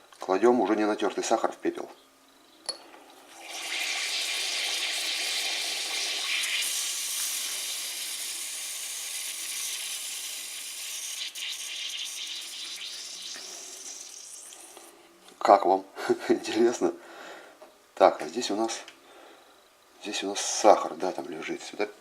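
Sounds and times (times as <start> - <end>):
cola fizzing in a glass: 3.3 - 14.9.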